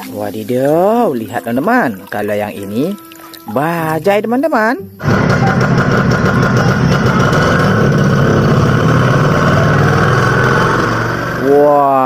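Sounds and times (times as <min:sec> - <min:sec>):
auto-rickshaw engine idling: 0:05.0 - 0:11.8.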